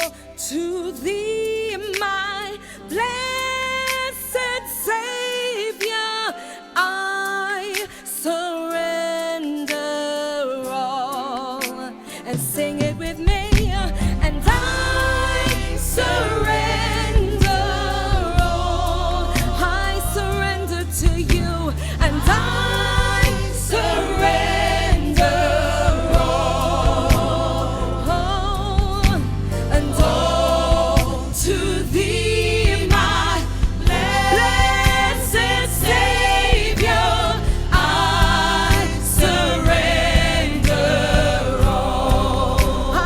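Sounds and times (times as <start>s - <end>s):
band with bass and drums: 12.4s - 43.0s
singers holding long notes: 14.3s - 43.0s.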